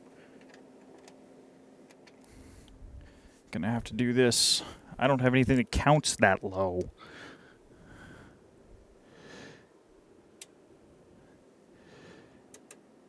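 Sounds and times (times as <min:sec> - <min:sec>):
soft breaths: 0:02.1 - 0:03.5, 0:06.9 - 0:09.8, 0:11.0 - 0:12.6.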